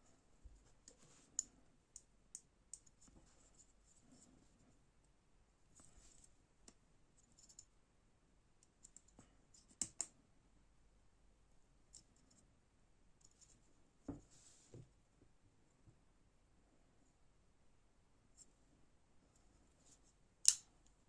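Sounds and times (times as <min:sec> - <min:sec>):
folding knife clicks: 0:20.4 - 0:20.7.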